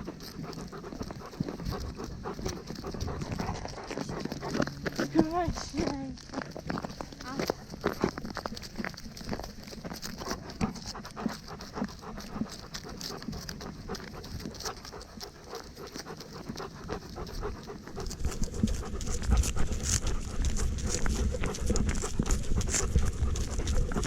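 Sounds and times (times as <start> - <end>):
dog panting: 0.0 - 24.0
low rumble and crackle: 0.0 - 24.0.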